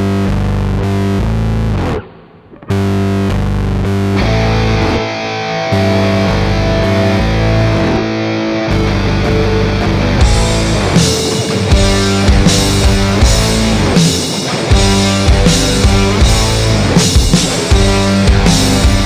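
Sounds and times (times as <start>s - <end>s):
rock music with electric guitar: 0.0s - 19.0s.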